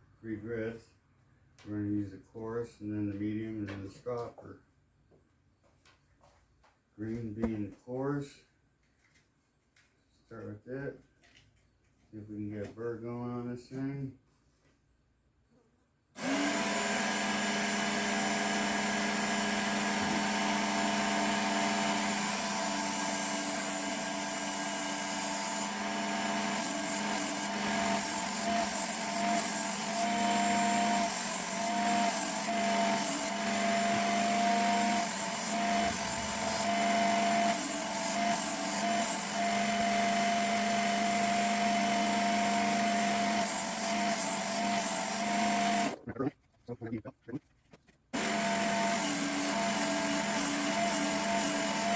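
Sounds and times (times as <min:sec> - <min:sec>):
sharpener motor hum: 0:16.2 - 0:46.0, 0:48.2 - 0:51.9.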